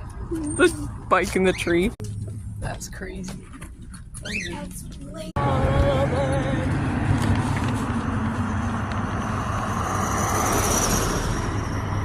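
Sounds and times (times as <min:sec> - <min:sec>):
vehicle road rumble: 0:00.0 - 0:12.0.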